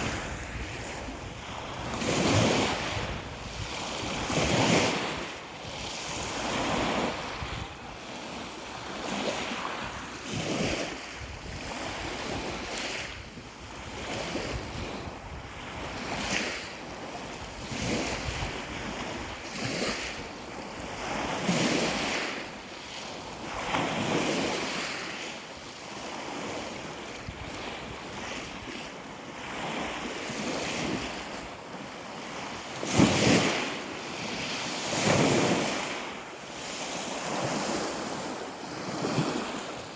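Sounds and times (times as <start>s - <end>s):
wind rumble on microphone: 0.0s - 22.4s, 26.3s - 28.9s
waves washing on shore: 0.0s - 39.9s.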